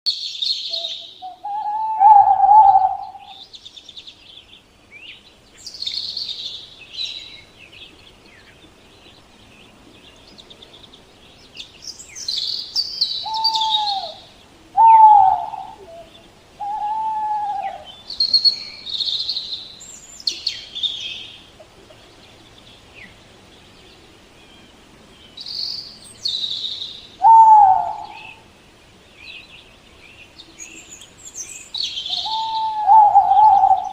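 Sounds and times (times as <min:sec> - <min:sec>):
small birds chirping: 0:00.1 - 0:33.9
owl hooting: 0:00.7 - 0:03.4, 0:13.1 - 0:18.7, 0:26.5 - 0:28.4, 0:32.0 - 0:33.9.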